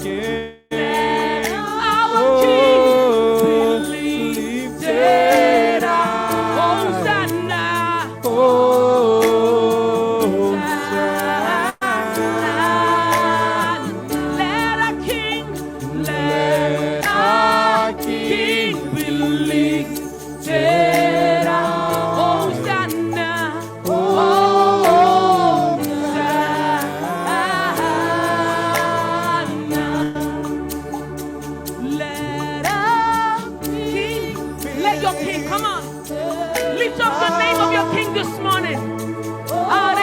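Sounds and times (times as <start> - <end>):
group singing a slow praise song: 0.0 - 40.0.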